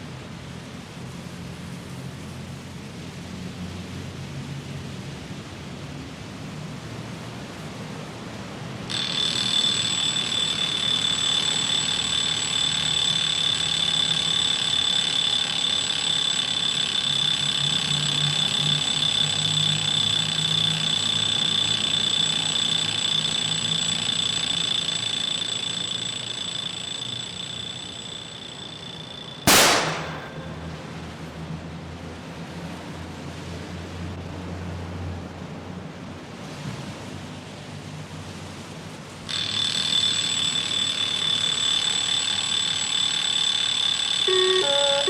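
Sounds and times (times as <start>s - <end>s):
electronic alarm tone: 8.9s - 30.7s, 39.3s - 45.0s
sharp bang: 29.5s - 30.8s.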